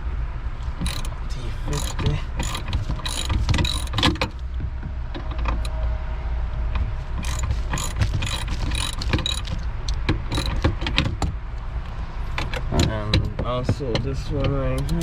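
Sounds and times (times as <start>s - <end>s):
ratchet wrench clicking: 0.6s - 4.4s, 7.2s - 11.2s.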